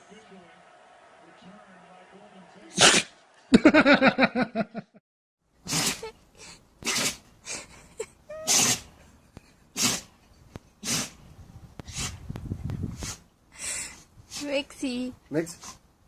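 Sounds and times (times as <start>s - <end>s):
dog sneezing: 2.8s - 3.1s, 5.6s - 6.1s, 6.8s - 7.3s, 8.4s - 8.9s, 9.7s - 10.1s, 10.8s - 11.2s.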